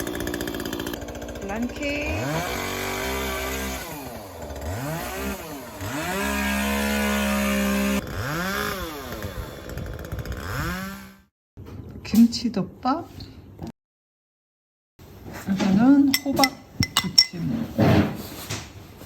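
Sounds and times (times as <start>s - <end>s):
chainsaw revving: 0.0s - 11.3s.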